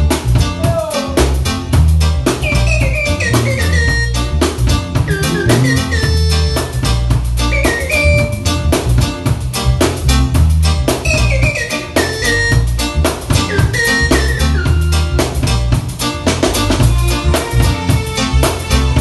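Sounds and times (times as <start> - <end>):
drum kit steady beat: 0.0 - 19.0
heavy bass line: 0.0 - 19.0.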